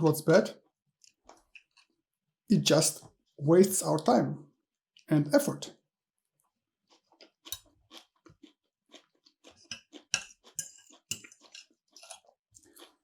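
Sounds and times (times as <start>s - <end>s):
wet chewing of food: 0.6s - 2.1s, 6.4s - 13.0s.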